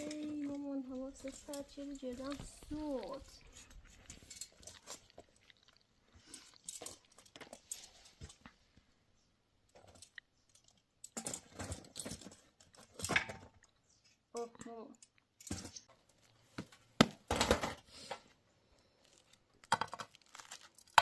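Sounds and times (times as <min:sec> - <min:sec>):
crunchy rustling: 0:00.0 - 0:08.4, 0:18.8 - 0:21.0.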